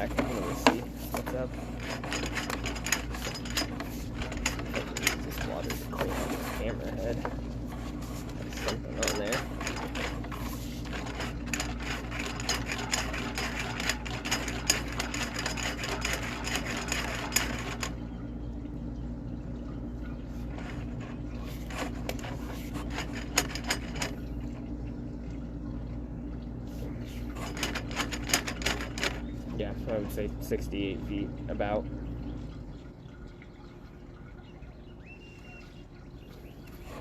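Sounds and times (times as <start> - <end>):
cable reel clicking rattle: 0.0 - 18.0, 20.4 - 24.2, 27.4 - 30.7
low electrical hum: 0.0 - 37.0.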